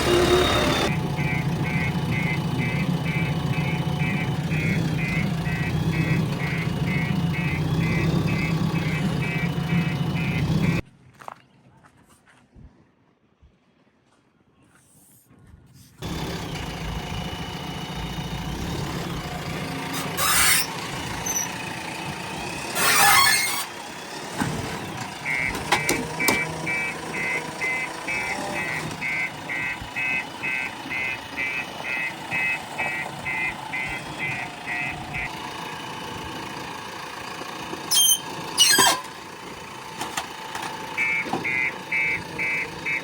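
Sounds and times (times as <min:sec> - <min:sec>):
diesel engine running: 0:00.0 - 0:10.8, 0:16.0 - 0:43.0
reversing alarm beeping: 0:00.0 - 0:10.8, 0:20.0 - 0:21.5, 0:25.2 - 0:35.3, 0:37.9 - 0:39.0, 0:41.0 - 0:43.0.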